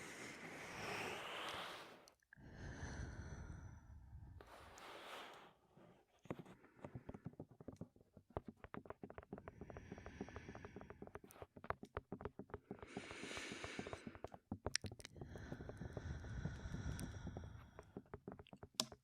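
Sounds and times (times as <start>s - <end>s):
fingertip tapping on microphone: 6.3s - 19.0s
heavy breaths into microphone: 12.6s - 14.4s.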